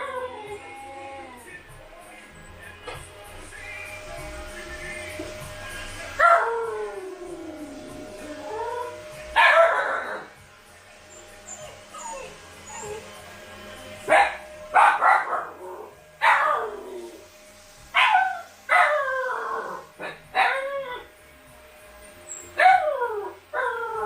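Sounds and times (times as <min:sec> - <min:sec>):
puppies yipping and howling: 0:00.0 - 0:02.7, 0:05.2 - 0:10.4, 0:11.0 - 0:17.2, 0:17.9 - 0:21.2, 0:22.2 - 0:24.0.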